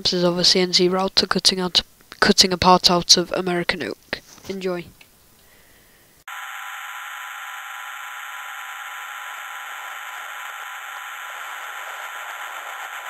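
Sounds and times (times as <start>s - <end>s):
filtered white noise hiss: 0.0s - 6.2s.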